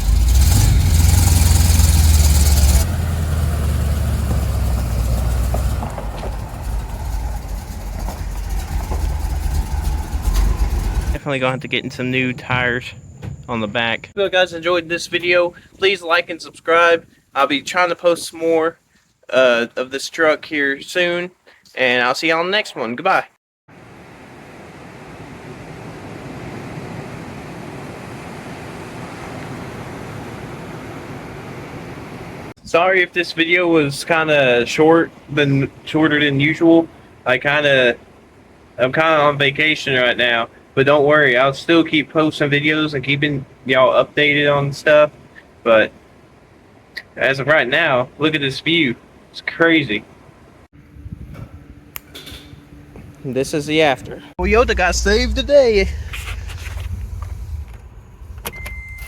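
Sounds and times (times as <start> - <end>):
truck engine running: 0.0 - 11.3, 50.8 - 58.9
steady rushing noise: 54.4 - 58.4.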